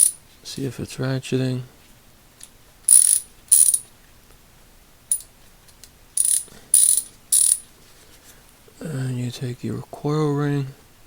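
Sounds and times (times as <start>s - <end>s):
ratchet clicking: 6.2s - 7.6s.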